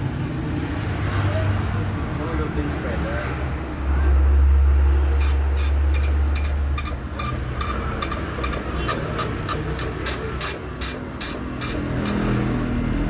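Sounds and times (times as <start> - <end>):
dot-matrix printer printing: 5.2 - 12.3.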